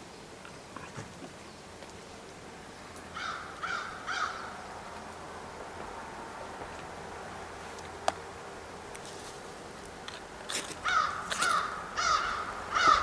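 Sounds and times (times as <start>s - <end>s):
crow cawing: 3.2s - 4.6s, 10.8s - 13.0s.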